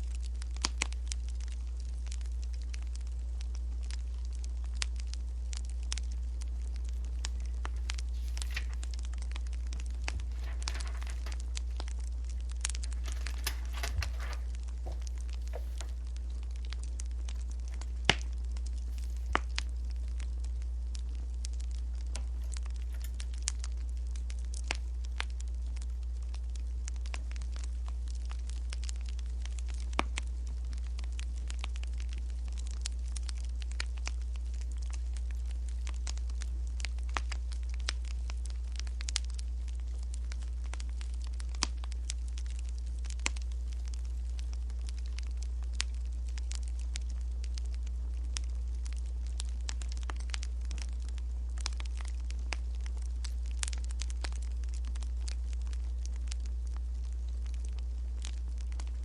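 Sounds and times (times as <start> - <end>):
low hum: 0.0 - 38.6
wood fire crackling: 0.0 - 59.0.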